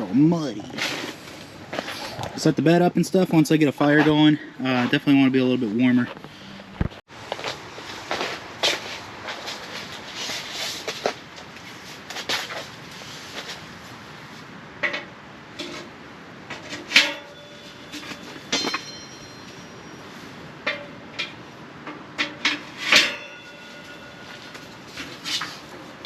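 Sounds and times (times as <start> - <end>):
metallic clanks ringing: 16.8 - 25.5.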